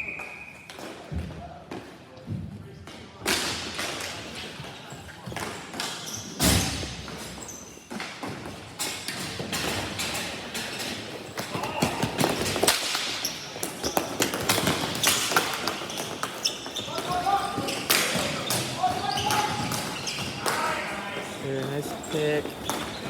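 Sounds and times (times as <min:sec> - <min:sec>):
hockey sticks clacking: 0:02.9 - 0:06.4, 0:07.0 - 0:23.0.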